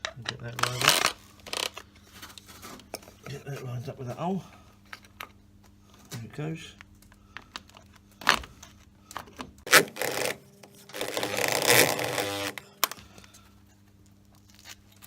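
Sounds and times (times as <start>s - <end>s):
power driver driving a screw: 9.7s - 13.0s.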